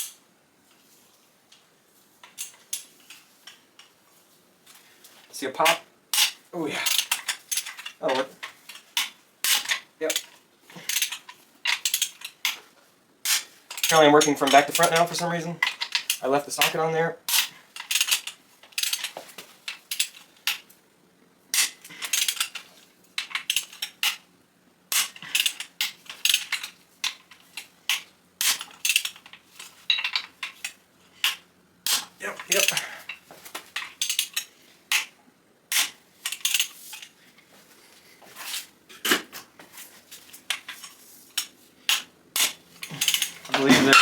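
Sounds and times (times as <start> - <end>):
tools clinking on metal: 25.0 - 33.2, 40.5 - 44.0.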